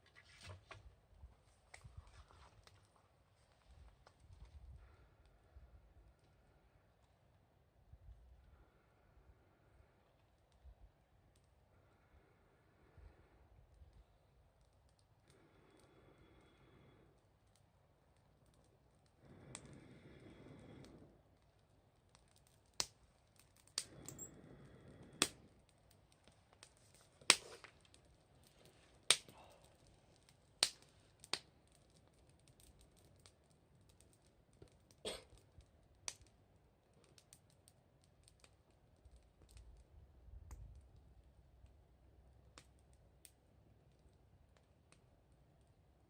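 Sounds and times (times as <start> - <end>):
wood fire crackling: 0.0 - 46.0
firewood popping: 13.7 - 45.1.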